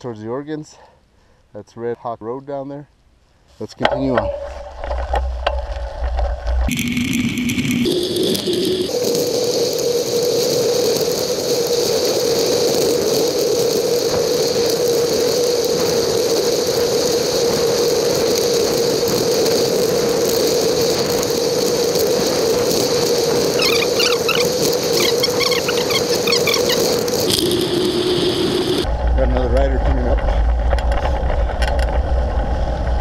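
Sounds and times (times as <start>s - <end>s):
high-pitched mechanical whir with rattle: 6.6s - 29.0s.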